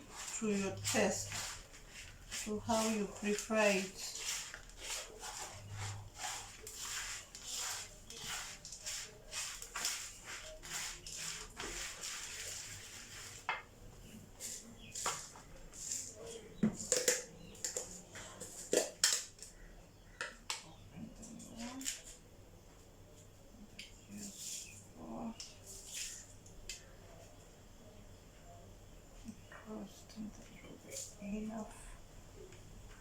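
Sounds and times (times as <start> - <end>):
spoon scraping a container: 0.0 - 13.5, 14.4 - 19.6.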